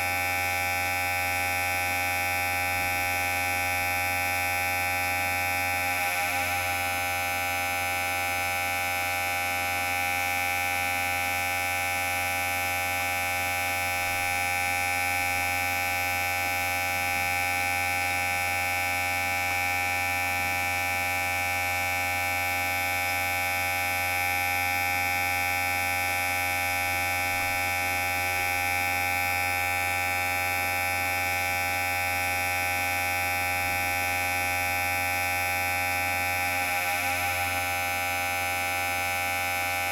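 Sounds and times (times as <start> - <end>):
electric hair clipper buzzing: 0.0 - 8.7, 12.6 - 39.9.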